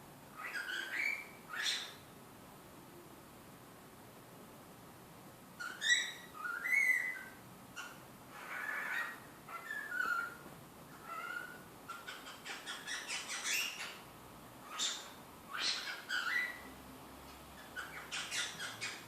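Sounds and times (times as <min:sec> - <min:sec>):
cockatiel whistling and chirping: 0:00.4 - 0:02.0, 0:05.6 - 0:10.4, 0:11.0 - 0:14.0, 0:14.7 - 0:16.7, 0:17.7 - 0:19.0.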